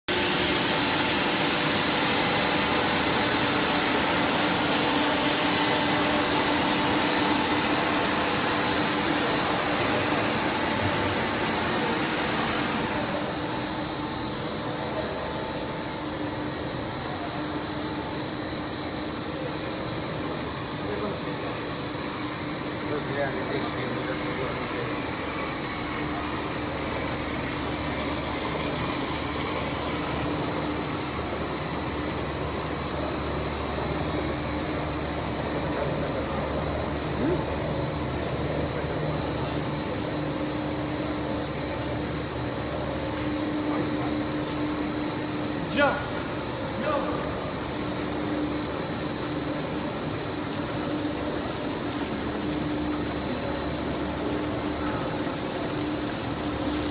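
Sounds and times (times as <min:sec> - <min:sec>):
machine drone with high whine: 0:00.1 - 0:56.9.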